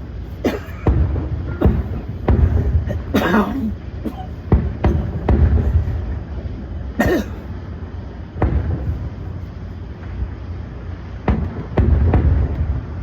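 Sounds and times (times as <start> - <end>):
fireworks banging: 0.0 - 10.3, 11.1 - 13.0
low rumble: 0.0 - 13.0
cough-like sound: 0.4 - 0.8, 2.9 - 5.1, 7.0 - 7.4.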